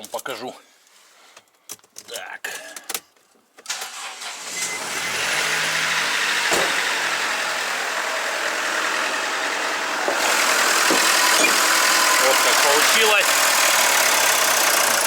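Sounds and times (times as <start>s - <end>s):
diesel engine starting and idling: 3.7s - 15.0s.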